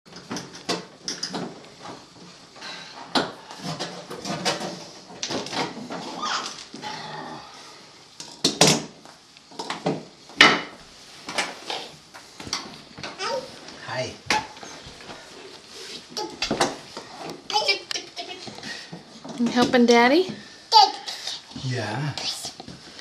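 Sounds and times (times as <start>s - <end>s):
knocks and clatter of tools: 0.1s - 2.0s, 3.1s - 6.2s.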